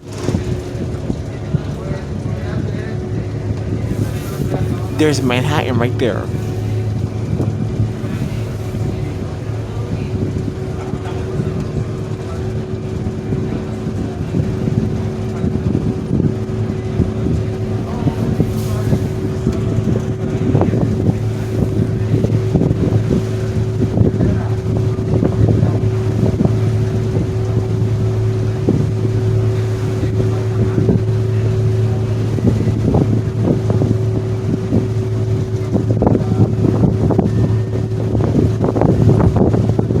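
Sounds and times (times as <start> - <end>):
ferry engines droning: 0.0 - 40.0
wind gusting on microphone: 12.7 - 40.0.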